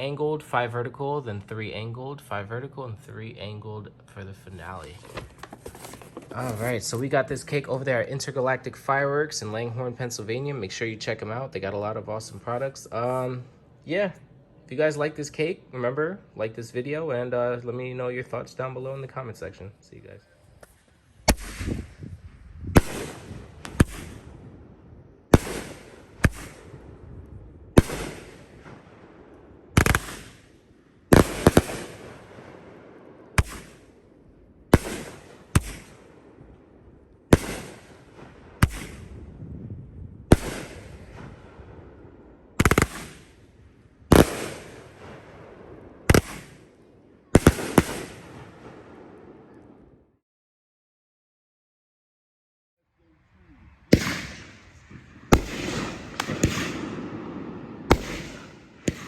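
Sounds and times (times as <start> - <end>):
firework shots cracking: 20.6 - 22.1, 22.7 - 24.6, 25.3 - 39.4, 40.3 - 49.5, 53.9 - 59.0.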